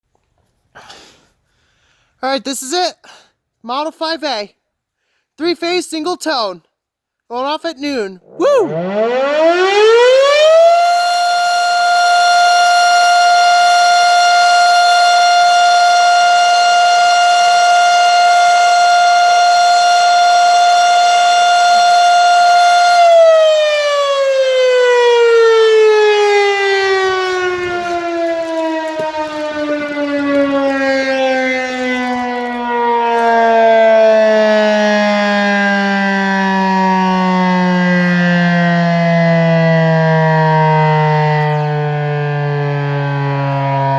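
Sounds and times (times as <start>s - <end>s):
siren steady high tone: 8.2s - 43.9s
siren winding down: 8.2s - 43.9s.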